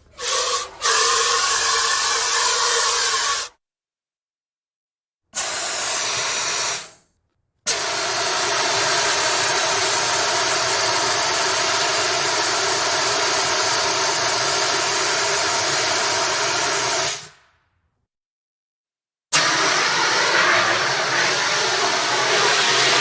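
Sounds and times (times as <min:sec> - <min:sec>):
fire extinguisher hissing: 0:00.0 - 0:03.6, 0:05.4 - 0:07.0, 0:07.7 - 0:17.5, 0:19.3 - 0:23.0.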